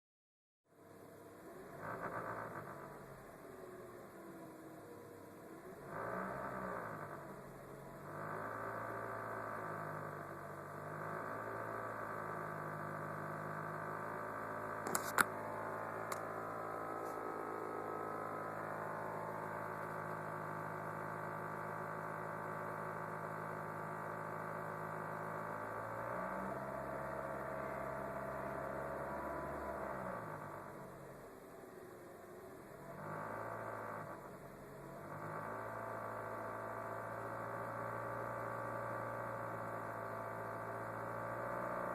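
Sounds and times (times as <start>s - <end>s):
car engine idling: 6.5s - 25.9s.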